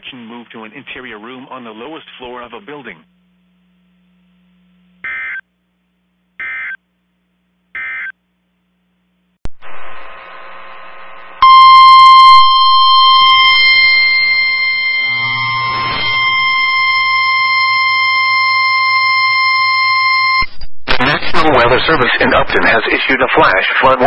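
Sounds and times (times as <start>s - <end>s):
radio static: 9.5s - 11.6s, 20.3s - 24.0s
loud steady alert tone: 9.6s - 21.2s
warbling data bursts: 9.6s - 21.9s.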